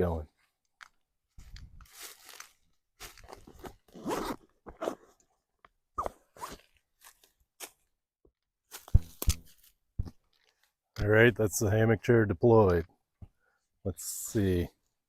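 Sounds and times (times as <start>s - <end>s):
zip pulls: 3.6s - 5.2s, 6.0s - 6.7s.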